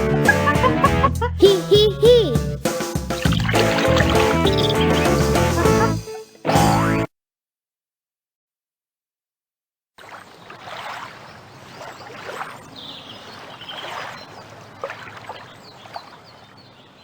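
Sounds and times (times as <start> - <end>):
water trickling and splashing: 3.1 - 5.8, 10.0 - 17.0
faint high chirp: 11.2 - 14.5.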